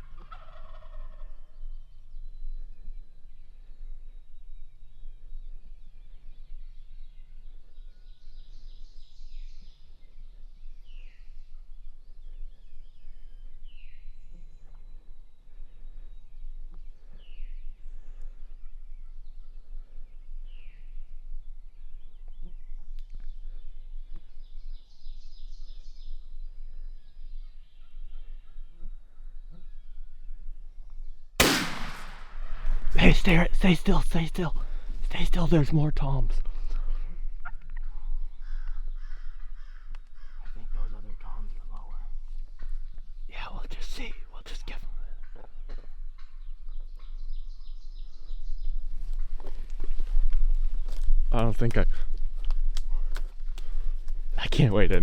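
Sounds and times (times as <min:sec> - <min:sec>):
turkey gobbling: 0:00.0 - 0:01.5
birds falling calls: 0:31.4 - 0:36.3.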